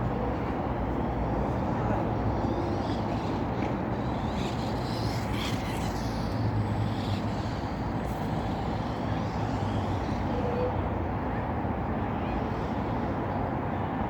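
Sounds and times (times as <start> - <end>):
toy electric motors whining: 2.4 - 10.4.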